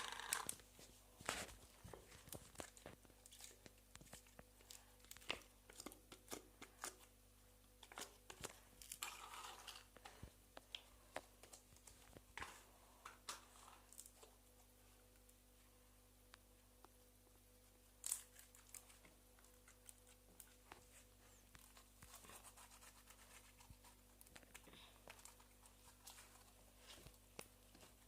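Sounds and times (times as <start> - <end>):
crinkly squelch: 0.0 - 7.1, 17.6 - 28.0.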